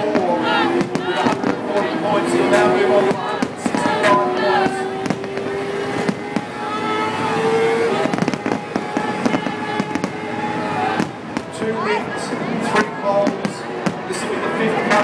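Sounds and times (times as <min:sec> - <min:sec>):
long steady tone: 0:00.0 - 0:11.4
fireworks banging and crackling: 0:00.0 - 0:15.0
voices: 0:00.0 - 0:15.0.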